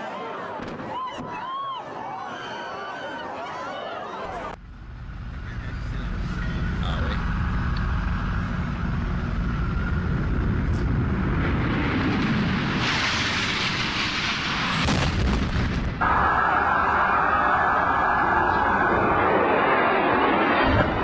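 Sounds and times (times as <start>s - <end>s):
jet engine roar: 4.5s - 21.0s
explosion: 7.4s - 21.0s.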